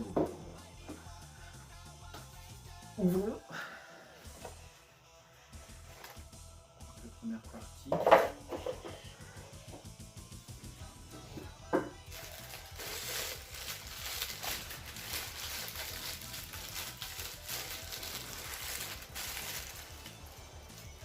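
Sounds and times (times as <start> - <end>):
paper and cardboard rustling: 12.1 - 20.2.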